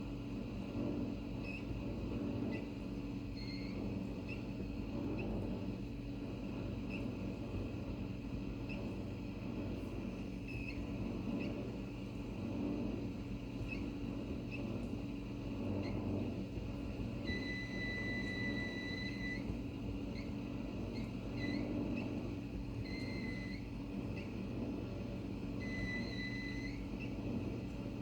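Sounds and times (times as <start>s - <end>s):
dishwasher humming: 16.9s - 20.3s, 20.9s - 28.0s.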